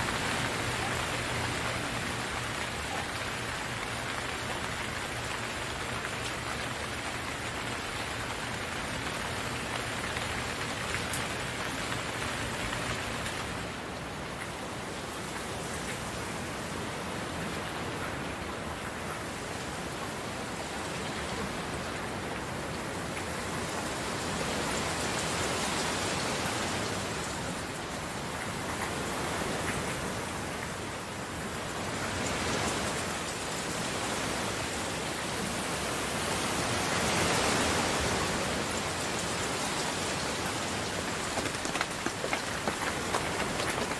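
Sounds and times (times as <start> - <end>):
heavy rain: 0.0 - 43.9.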